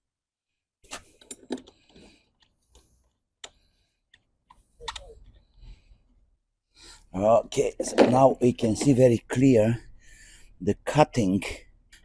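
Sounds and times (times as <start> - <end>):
lawn mower parts clattering: 7.8 - 9.1.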